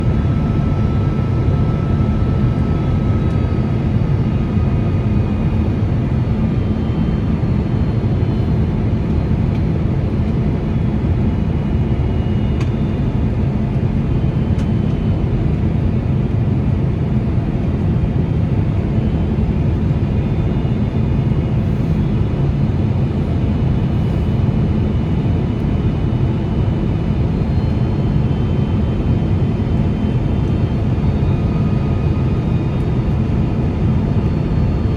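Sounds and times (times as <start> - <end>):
faint high whining tones: 0.0 - 10.0
airliner cabin engine roar: 0.0 - 34.9.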